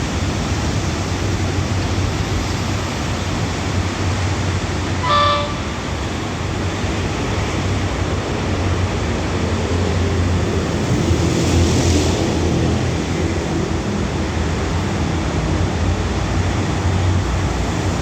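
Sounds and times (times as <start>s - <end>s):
constant rushing noise: 0.0s - 18.0s
brief high tone: 4.9s - 6.1s.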